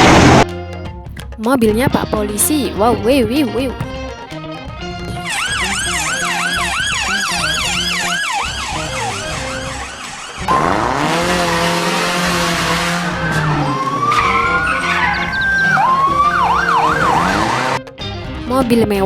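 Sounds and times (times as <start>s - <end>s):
background music: 0.0s - 19.0s
police siren wailing: 5.2s - 17.9s
rushing whoosh with rising tone: 8.1s - 17.8s.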